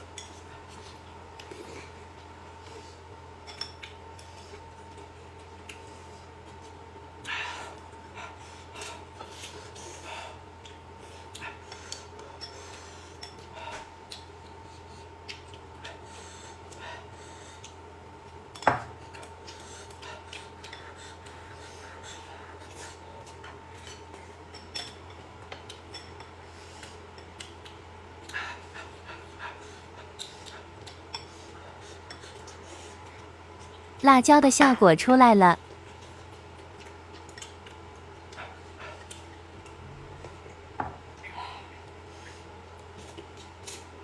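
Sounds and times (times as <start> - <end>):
utensils clinking against dishes: 23.8 - 25.2.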